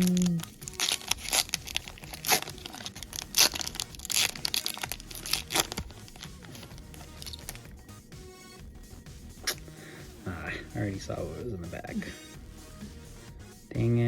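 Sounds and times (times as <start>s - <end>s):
foil wrapper tearing and crinkling: 0.0s - 7.7s.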